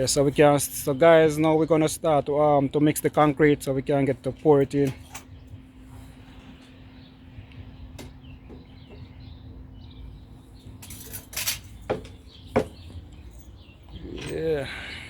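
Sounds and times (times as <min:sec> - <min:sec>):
tools clinking and knocking: 0:10.7 - 0:14.6.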